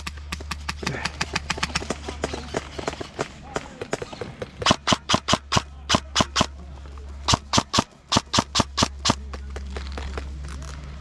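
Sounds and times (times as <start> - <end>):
airsoft gun firing sharp cracks: 0.0 - 6.5, 7.3 - 9.2.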